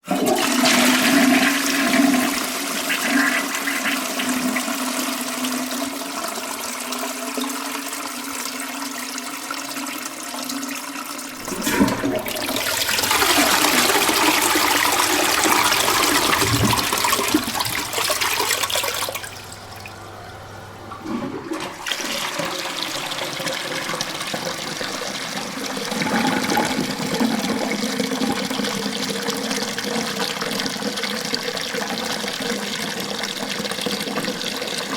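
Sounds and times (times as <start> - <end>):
toilet flushing: 0.0 - 34.9.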